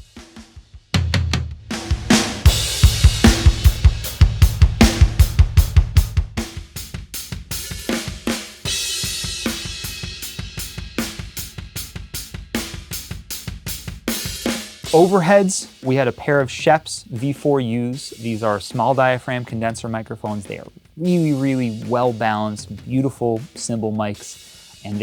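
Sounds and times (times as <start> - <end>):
crashing cymbals and hi-hat: 0.0 - 19.6, 20.3 - 25.0
snare backbeat: 1.0 - 6.9, 12.6 - 24.0.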